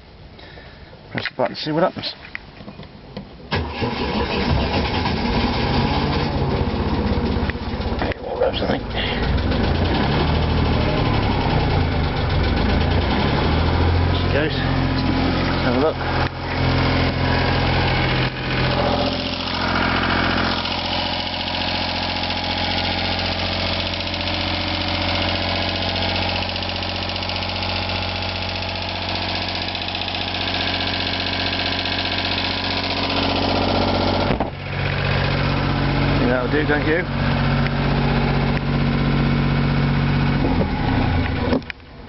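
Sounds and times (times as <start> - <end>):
boat engine idling: 6.5 - 39.7.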